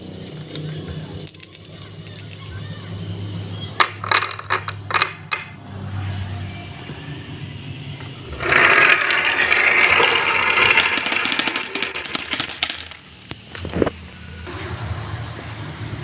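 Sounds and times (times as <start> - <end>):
marbles rattling along marble run: 0.0 - 2.7, 3.8 - 5.5, 8.2 - 13.8.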